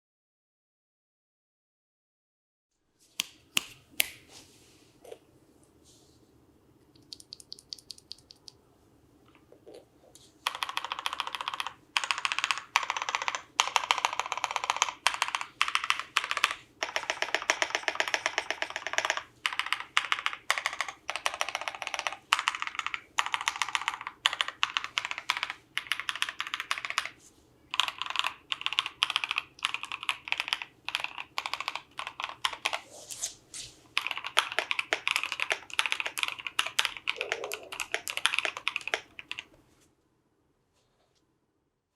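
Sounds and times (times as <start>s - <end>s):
fast typing on mechanical keyboard: 7.0s - 8.5s, 10.4s - 32.8s, 34.0s - 39.5s.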